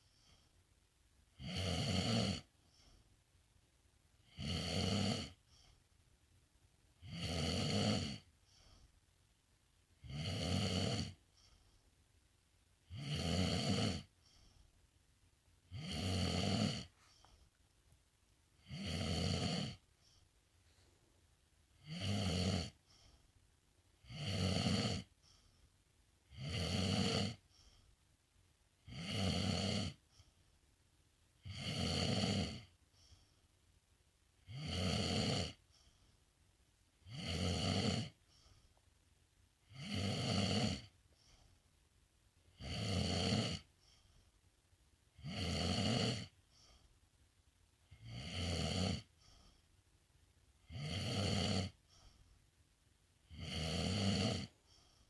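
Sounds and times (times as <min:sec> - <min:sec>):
pet snoring: 0:01.3 - 0:02.9, 0:04.2 - 0:05.7, 0:07.0 - 0:08.8, 0:10.0 - 0:11.6, 0:12.8 - 0:14.6, 0:15.7 - 0:17.4, 0:18.6 - 0:20.8, 0:21.8 - 0:23.2, 0:24.0 - 0:25.5, 0:26.2 - 0:27.8, 0:28.8 - 0:30.3, 0:31.4 - 0:33.2, 0:34.4 - 0:36.0, 0:37.0 - 0:38.6, 0:39.6 - 0:41.4, 0:42.5 - 0:44.1, 0:45.1 - 0:46.8, 0:47.9 - 0:49.6, 0:50.6 - 0:52.3, 0:53.2 - 0:55.0.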